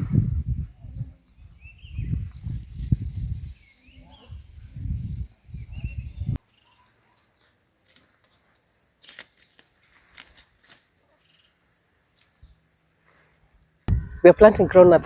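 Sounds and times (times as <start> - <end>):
faint rustling: 6.4 - 13.9.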